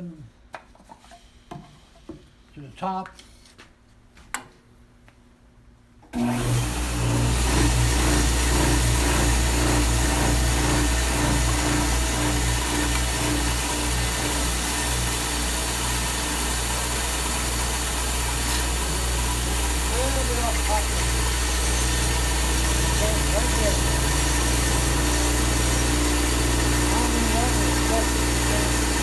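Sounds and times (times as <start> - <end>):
electric power sander running: 6.2 - 29.0.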